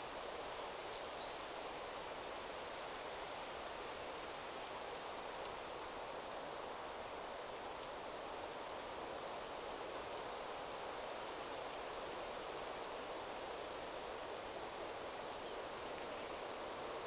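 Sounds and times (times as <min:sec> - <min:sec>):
wind rustling through trees: 0:00.0 - 0:17.0.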